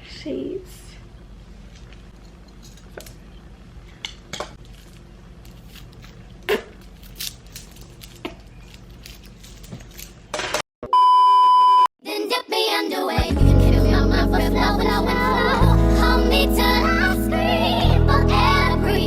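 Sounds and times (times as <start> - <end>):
loud pure-tone beep: 10.9 - 11.9
low steady hum: 13.4 - 19.0.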